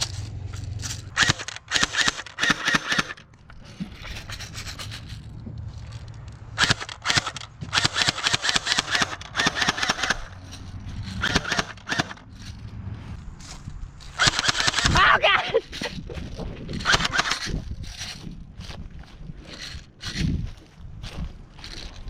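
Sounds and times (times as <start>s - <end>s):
airsoft gun firing bursts: 1.1s - 3.3s, 6.6s - 10.4s, 11.0s - 12.2s, 14.1s - 15.0s, 16.8s - 17.5s.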